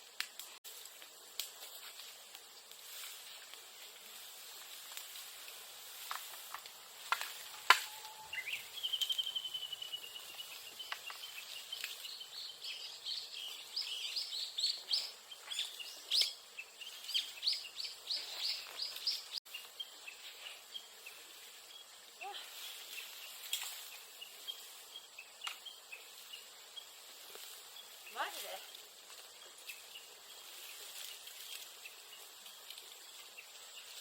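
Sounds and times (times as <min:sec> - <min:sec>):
bird whistling call: 0:07.8 - 0:10.0.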